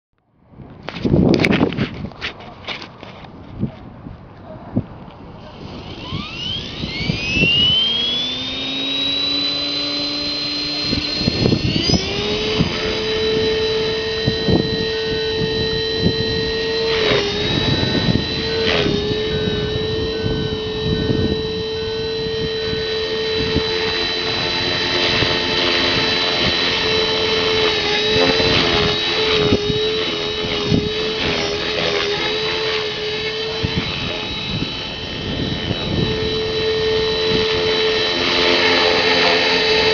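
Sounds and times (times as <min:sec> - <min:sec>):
electric helicopter whine: 0:05.0 - 0:39.9
wind buffeting microphone: 0:10.4 - 0:38.4.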